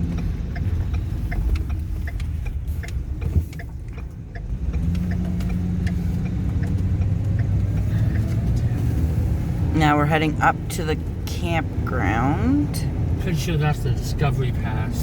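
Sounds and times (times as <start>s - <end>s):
light ticking: 0.0s - 8.6s
van engine running: 0.0s - 15.0s.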